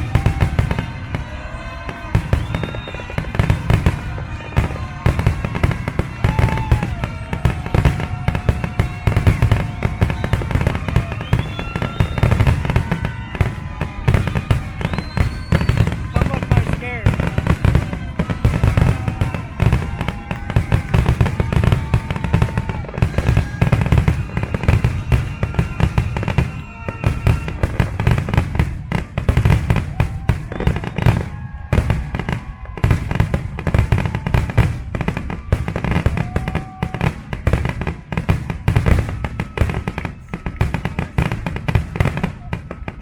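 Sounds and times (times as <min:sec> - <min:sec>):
fireworks bangs and crackles: 0:00.0 - 0:43.0.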